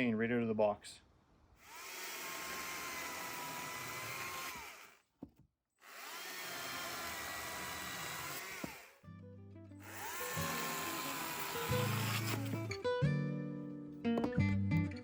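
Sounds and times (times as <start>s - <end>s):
electric chainsaw motor whining: 1.6s - 5.0s, 5.8s - 9.0s, 9.8s - 12.8s.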